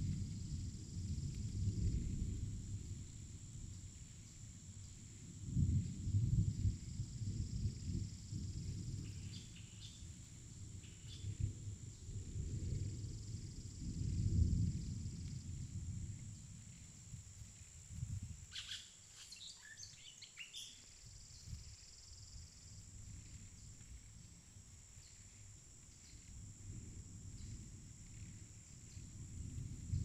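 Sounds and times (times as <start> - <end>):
bird chirps: 18.5 - 20.8.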